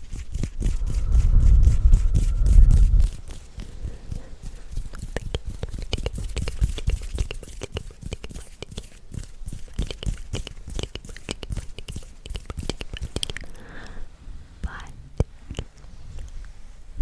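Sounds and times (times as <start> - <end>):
soft low thumps: 0.6 - 5.6.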